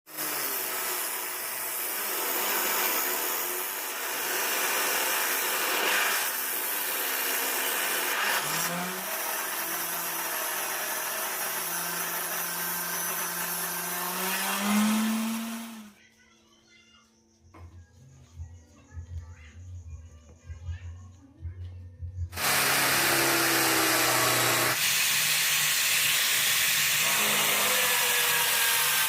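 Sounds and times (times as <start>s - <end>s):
power tool grinding: 0.1s - 16.0s, 22.3s - 29.0s.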